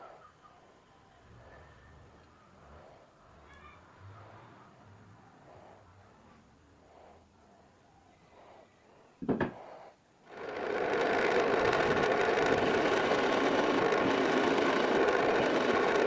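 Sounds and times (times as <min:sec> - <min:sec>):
sharp knock: 0:09.2 - 0:09.6
power tool motor running: 0:10.3 - 0:16.0.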